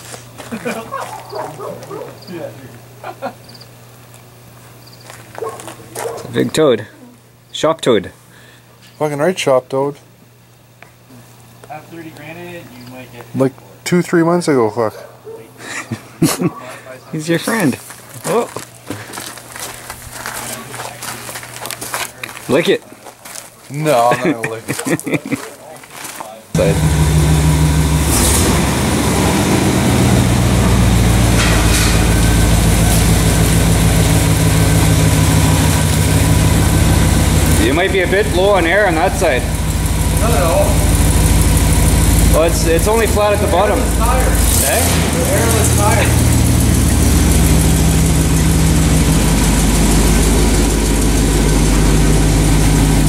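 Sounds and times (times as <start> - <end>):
pickup truck engine idling: 26.6 - 53.0.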